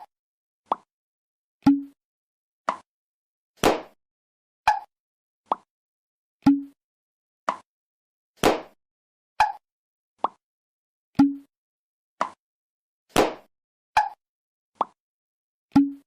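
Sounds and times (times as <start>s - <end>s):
short pop sound effects: 3.6s - 4.0s, 8.4s - 8.8s, 13.1s - 14.2s.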